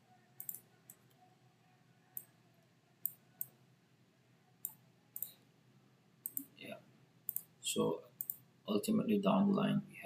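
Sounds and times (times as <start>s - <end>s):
computer mouse clicks: 0.4s - 1.2s, 4.6s - 5.4s, 6.2s - 6.5s, 7.3s - 7.5s, 8.2s - 8.4s.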